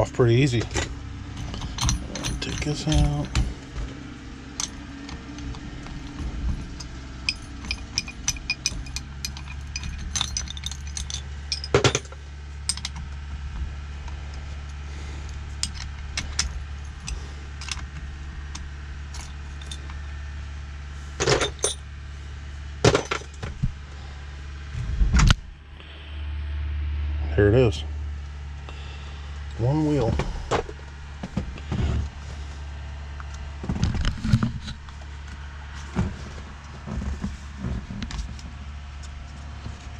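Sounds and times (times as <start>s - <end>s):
metal tools clinking: 0.0s - 13.0s, 14.3s - 20.0s, 21.2s - 21.8s, 22.8s - 23.4s
steady low hum: 0.0s - 39.9s.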